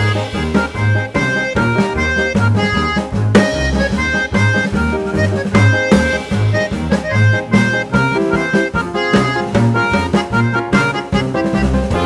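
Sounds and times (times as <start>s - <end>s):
instrumental music with beat: 0.0s - 12.0s.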